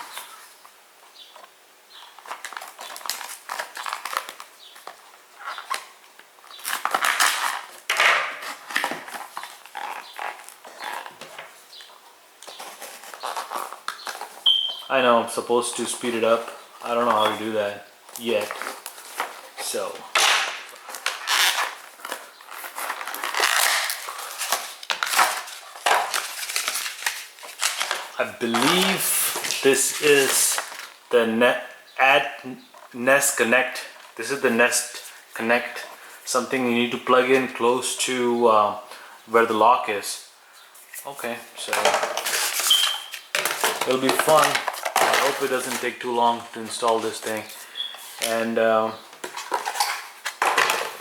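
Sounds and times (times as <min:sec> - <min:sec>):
cardboard packaging rustling: 0:02.0 - 0:14.9, 0:15.6 - 0:31.0, 0:40.8 - 0:51.0
packaging crinkling: 0:02.2 - 0:05.9, 0:06.5 - 0:11.6, 0:12.4 - 0:14.5, 0:18.1 - 0:31.0, 0:41.6 - 0:48.5, 0:49.2 - 0:51.0.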